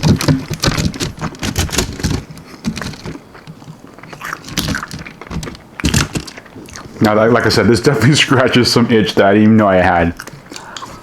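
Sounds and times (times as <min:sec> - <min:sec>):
crunchy chewing: 0:00.0 - 0:07.2, 0:10.1 - 0:11.0.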